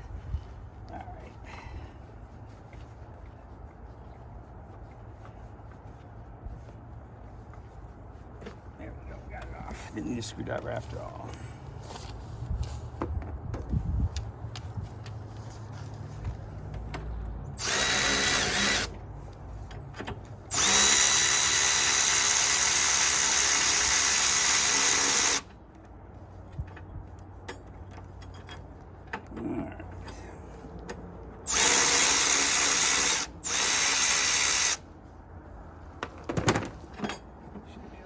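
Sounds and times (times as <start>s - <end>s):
power drill motor whine: 17.6s - 18.9s, 20.5s - 25.5s, 31.5s - 34.8s.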